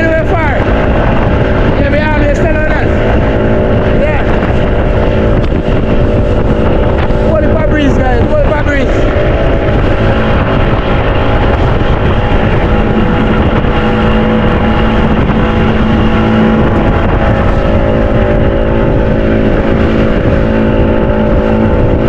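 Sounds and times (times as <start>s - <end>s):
outboard motor running: 0.0s - 22.0s
rumbling water rush: 0.0s - 22.0s.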